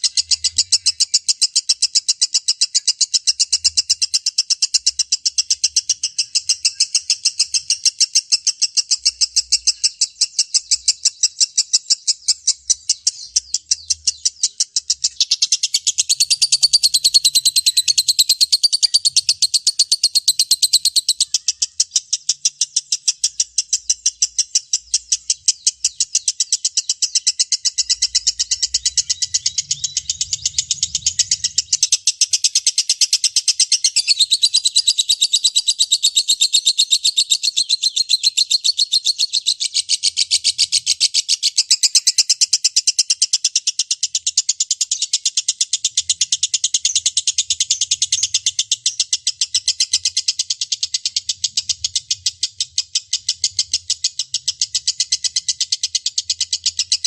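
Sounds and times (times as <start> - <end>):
lovebird chattering: 0.0 - 57.0.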